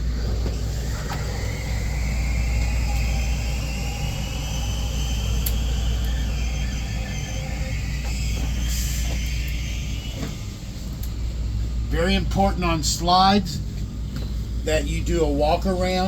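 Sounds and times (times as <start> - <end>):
motor whine: 0.0 - 12.8
steady low hum: 0.0 - 16.0.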